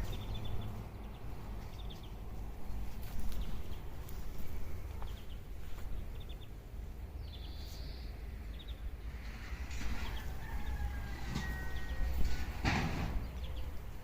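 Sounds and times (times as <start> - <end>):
rooster crowing: 9.8 - 12.6.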